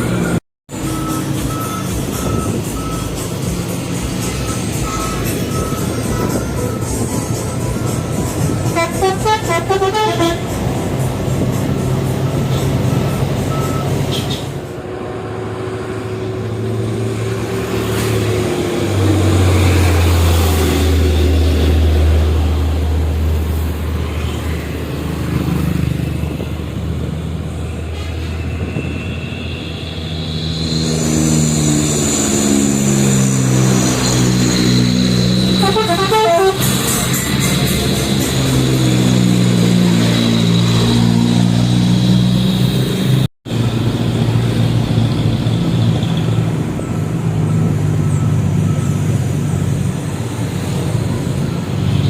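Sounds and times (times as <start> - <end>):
musical truck horns: 0.0 - 18.2, 27.8 - 43.2
truck engines: 0.0 - 52.0.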